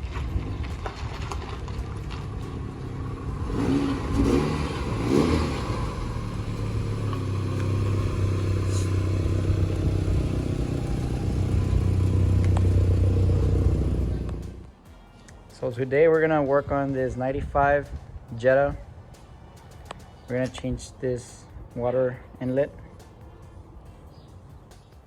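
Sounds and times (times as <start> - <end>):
car engine revving and idling: 0.2 - 14.7.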